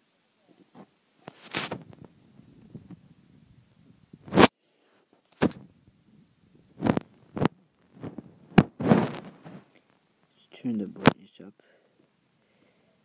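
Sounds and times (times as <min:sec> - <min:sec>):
rubbing scrapes: 0:06.8 - 0:09.7.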